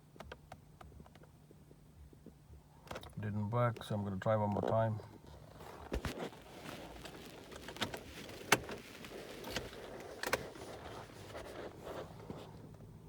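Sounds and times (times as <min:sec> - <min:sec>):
ignition key turning: 0:07.6 - 0:08.8, 0:09.4 - 0:10.7.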